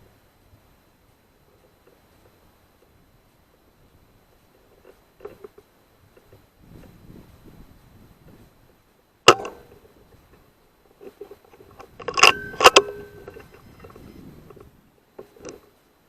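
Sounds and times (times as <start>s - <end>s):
air rifle shot: 9.3s - 9.7s
sharp metallic clanks: 9.3s - 9.8s, 12.0s - 13.5s.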